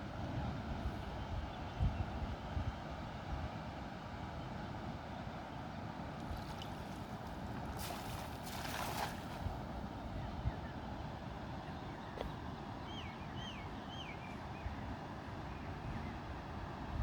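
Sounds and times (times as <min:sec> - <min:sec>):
wind: 0:00.0 - 0:17.0
rushing splash of water: 0:06.2 - 0:09.8
water noise: 0:06.2 - 0:10.1.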